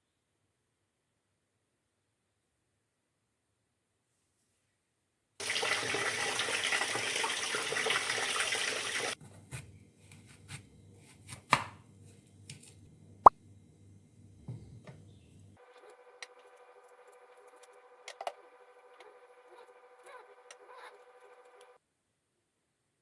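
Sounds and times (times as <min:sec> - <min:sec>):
water running: 0:05.4 - 0:09.2.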